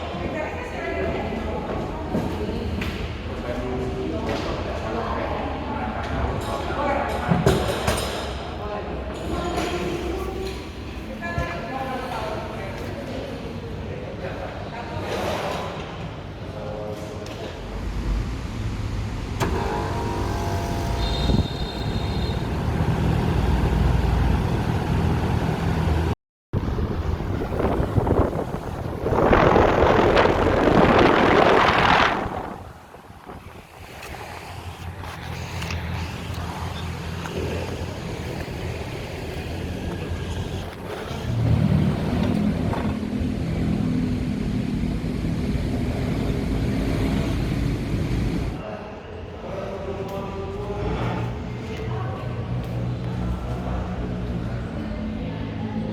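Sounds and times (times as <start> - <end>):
strong low hum: 17.7 - 33.6, 37.4 - 48.6
air conditioner motors running: 17.8 - 26.2, 36.0 - 48.6
air conditioner click: 19.4 - 21.5.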